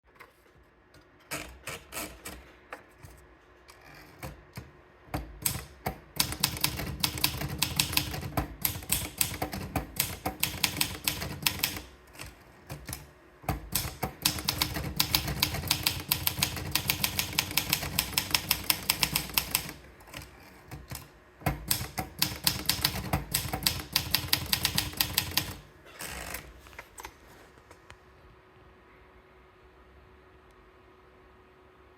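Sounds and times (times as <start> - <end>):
typewriter keystrokes: 4.2 - 25.7.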